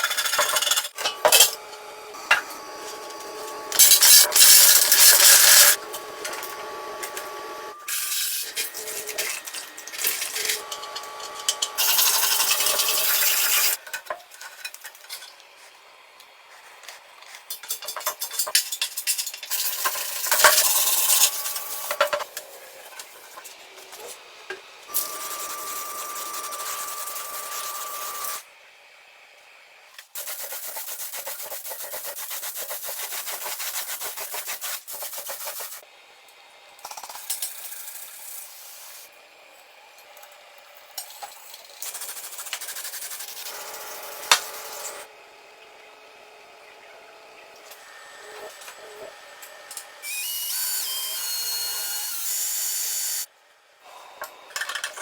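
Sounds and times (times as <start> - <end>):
sanding on metal: 25.0 - 28.4, 30.2 - 35.8.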